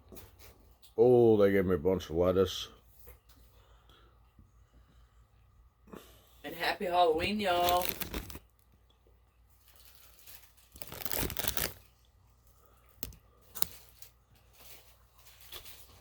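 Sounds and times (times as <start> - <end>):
paper wrapper crinkling: 7.2 - 8.7, 9.6 - 12.1, 13.0 - 16.0.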